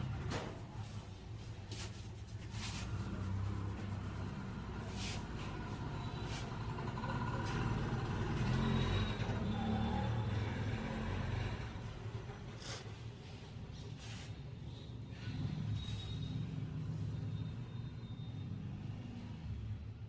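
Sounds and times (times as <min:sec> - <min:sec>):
road traffic rumble: 0:00.0 - 0:20.0.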